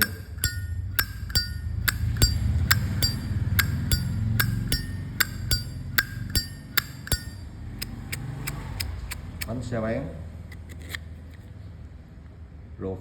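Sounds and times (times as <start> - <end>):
lighter lid clicking open and shut: 7.8 - 9.6, 10.5 - 11.4.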